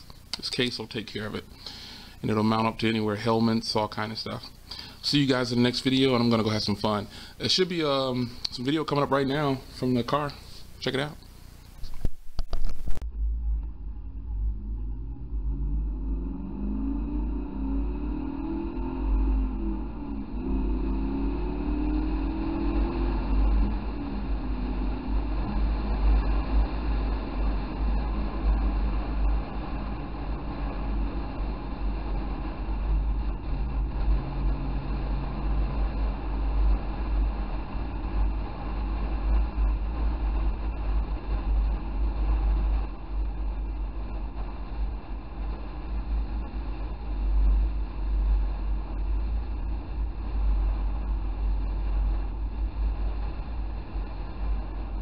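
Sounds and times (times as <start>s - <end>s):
car engine and road rumble: 12.7s - 55.0s.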